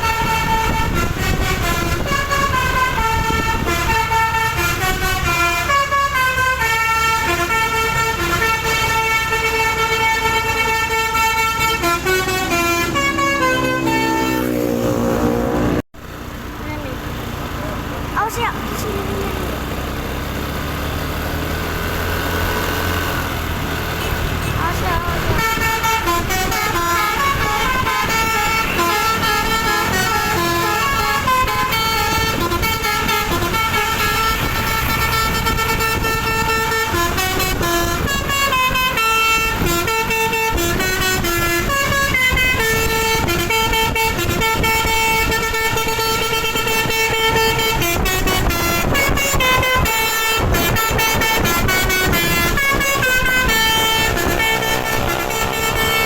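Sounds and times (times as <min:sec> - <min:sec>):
air horn playing tunes: 0:00.0 - 0:15.8, 0:24.0 - 0:56.0
engine and road rumble: 0:00.0 - 0:56.0.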